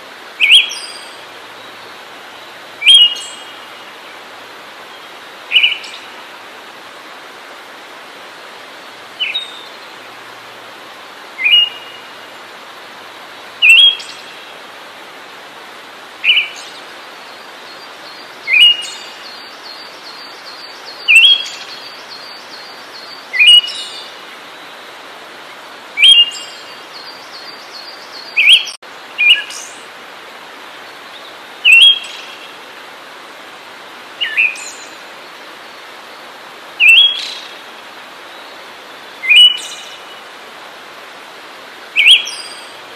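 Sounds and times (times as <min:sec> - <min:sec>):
steady background hiss: 0:00.0 - 0:42.9
songbird rising call: 0:00.4 - 0:01.8, 0:02.4 - 0:03.8, 0:05.0 - 0:06.1, 0:11.4 - 0:12.2, 0:13.6 - 0:14.4, 0:16.2 - 0:24.8, 0:26.0 - 0:29.8, 0:31.6 - 0:32.5, 0:36.8 - 0:37.6, 0:38.3 - 0:40.2, 0:42.0 - 0:42.8.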